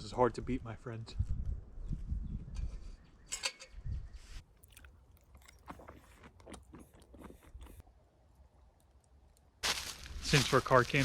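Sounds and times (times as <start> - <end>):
person chewing food: 4.4 - 9.6.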